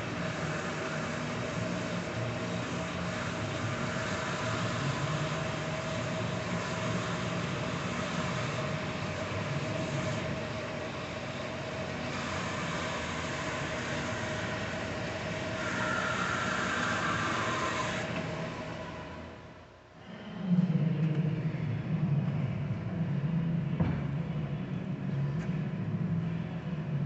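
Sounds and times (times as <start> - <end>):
bandsaw humming with whine: 0.0 - 19.4.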